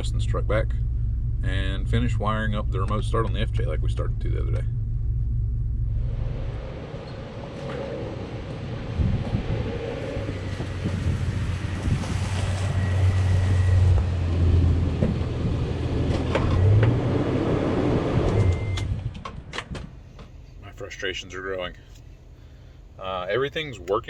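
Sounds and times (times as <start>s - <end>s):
low drone: 0.0s - 19.0s
truck road and wind noise: 0.0s - 24.0s.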